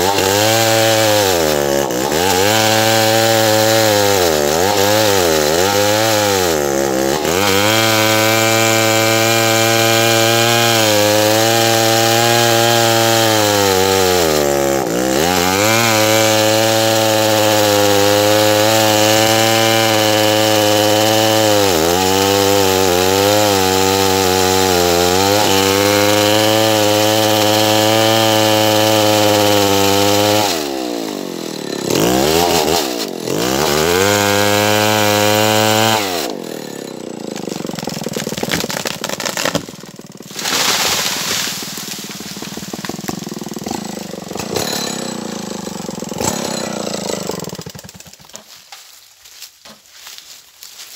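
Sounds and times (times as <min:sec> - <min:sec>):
chainsaw cutting wood: 0:00.0 - 0:50.9.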